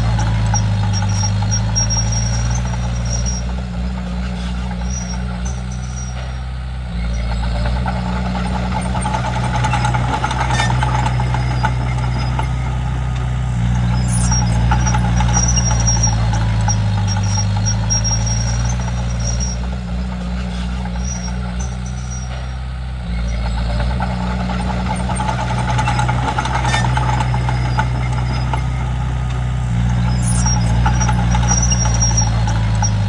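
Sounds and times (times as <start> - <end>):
bulldozer diesel engine running: 0.0 - 33.0
faint high squeal: 0.1 - 3.6, 4.3 - 7.7, 13.7 - 19.8, 20.4 - 22.5, 29.9 - 33.0.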